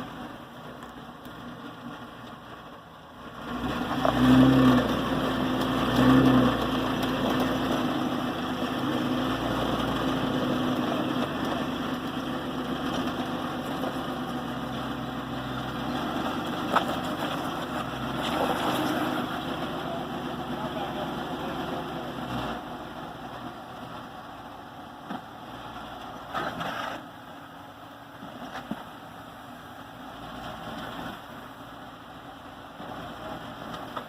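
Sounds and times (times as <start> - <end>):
vehicle engine revving: 3.3 - 24.3.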